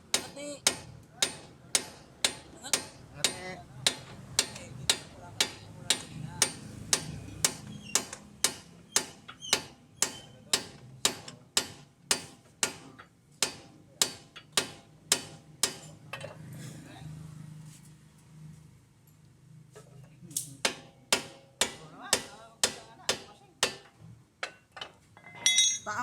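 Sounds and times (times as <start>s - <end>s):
hammer striking metal: 0.1s - 16.0s, 20.6s - 24.6s.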